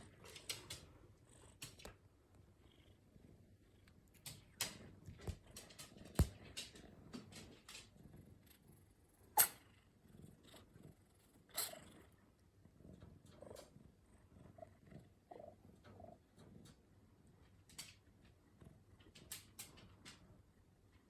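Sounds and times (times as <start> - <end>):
cat purring: 0.0 - 21.0
cat sneezing: 9.4 - 9.7, 11.5 - 11.8.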